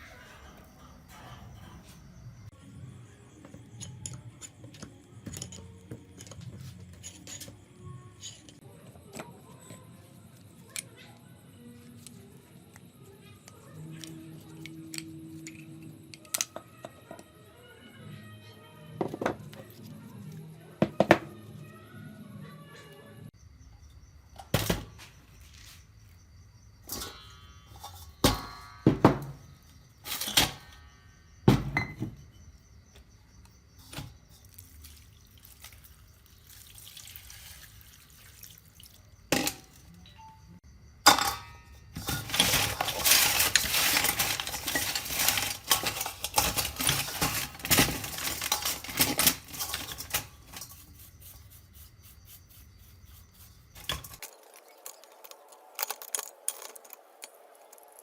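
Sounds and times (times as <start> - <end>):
metal parts clinking: 3.8 - 7.6, 41.1 - 50.8, 53.8 - 58.0
metal rattling clatter: 41.2 - 50.8.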